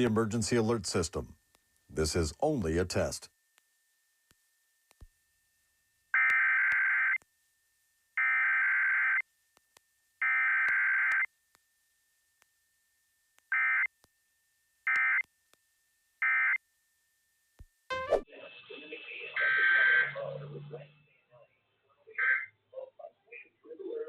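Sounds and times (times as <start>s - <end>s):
buzzy data tones: 19.4s - 21.2s.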